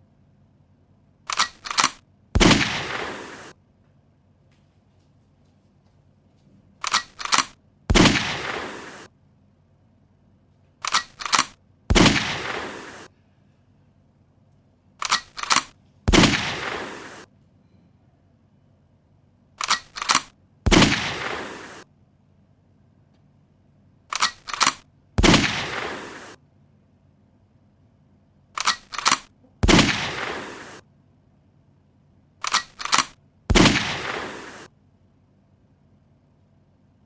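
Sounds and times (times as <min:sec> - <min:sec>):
quick clicks: 0:01.2 - 0:03.6, 0:06.8 - 0:09.1, 0:10.6 - 0:13.1, 0:15.0 - 0:17.3, 0:19.6 - 0:21.9, 0:24.1 - 0:26.4, 0:28.6 - 0:30.8, 0:32.4 - 0:34.7
loud gunshot with ringing tail: 0:02.4 - 0:03.4, 0:07.9 - 0:08.8, 0:11.9 - 0:12.9, 0:16.1 - 0:17.3, 0:29.6 - 0:30.7, 0:33.5 - 0:34.5.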